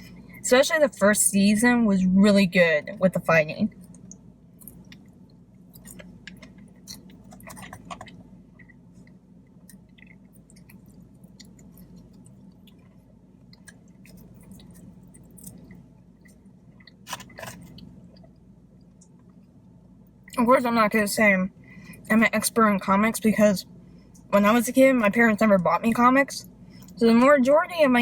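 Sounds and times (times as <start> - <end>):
person chewing: 3.8 - 19.1.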